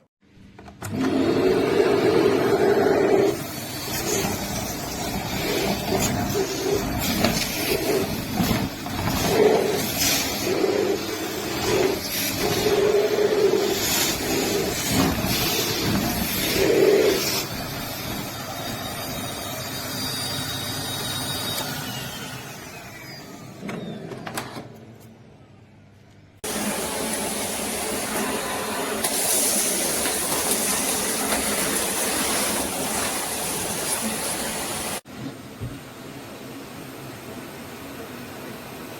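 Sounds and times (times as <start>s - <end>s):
vacuum cleaner running: 0.8s - 24.7s, 26.4s - 38.9s.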